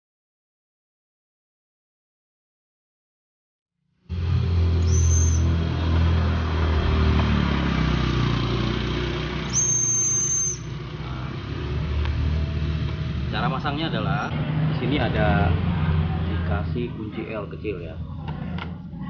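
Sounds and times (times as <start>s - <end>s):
high thin whistle tone: 4.8s - 5.6s, 9.5s - 10.8s.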